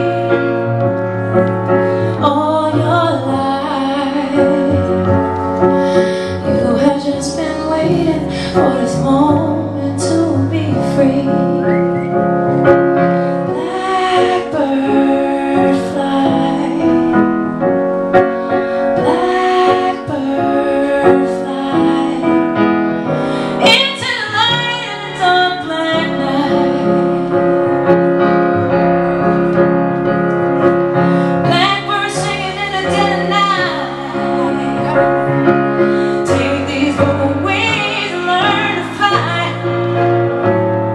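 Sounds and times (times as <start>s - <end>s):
piano accompaniment: 0.0s - 40.9s
woman singing: 2.2s - 12.2s, 13.4s - 17.5s, 18.8s - 22.8s, 23.4s - 27.4s, 31.4s - 35.3s, 35.9s - 40.0s.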